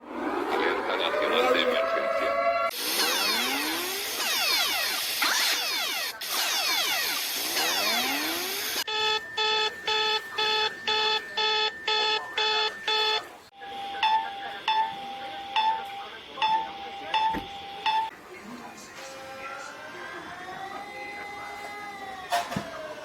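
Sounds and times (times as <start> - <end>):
sweeping alarm tones: 1.4 - 18.1
pulsing multi-tone electronic beep: 2.7 - 13.3.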